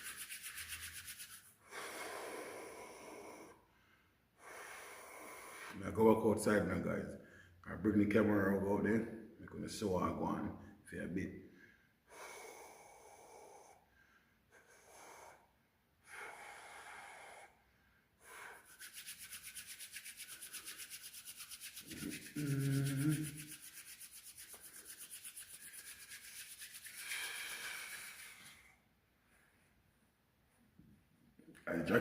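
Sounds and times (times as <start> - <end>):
fast even rubbing: 0.0 - 1.5, 18.6 - 28.6
low hum of a voice: 22.0 - 23.3.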